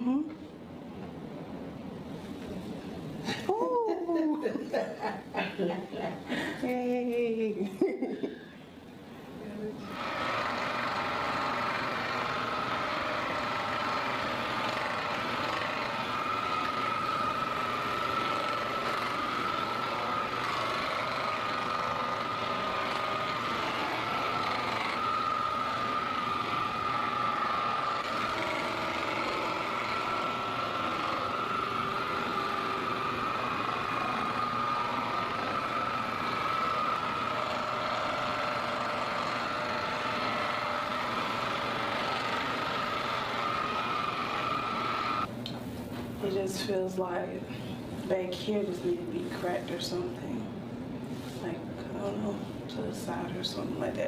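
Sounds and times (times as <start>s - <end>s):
small electric motor buzzing: 9.8s - 45.3s.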